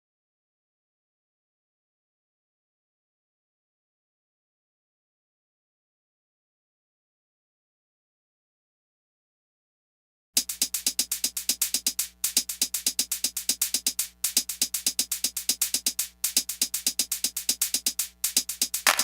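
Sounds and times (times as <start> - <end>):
electronic music with drum-machine beat: 10.4 - 19.0.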